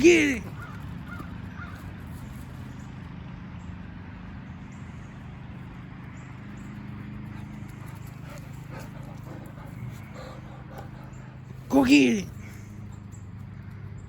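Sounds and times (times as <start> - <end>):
dog's feet pattering: 6.4 - 11.7.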